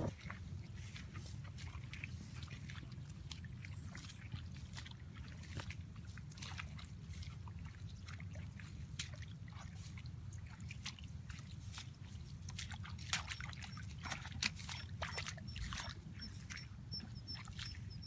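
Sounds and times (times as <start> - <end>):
steady low rumble: 0.0 - 0.2
water splashing and dripping: 1.5 - 18.0.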